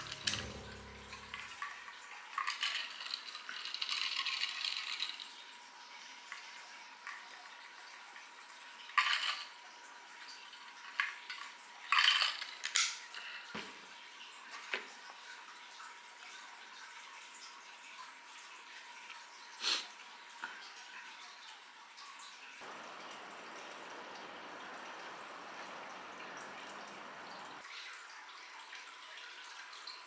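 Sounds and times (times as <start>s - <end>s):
dishes and cutlery clinking: 0.0s - 1.5s
running water: 0.0s - 17.5s, 22.6s - 30.0s.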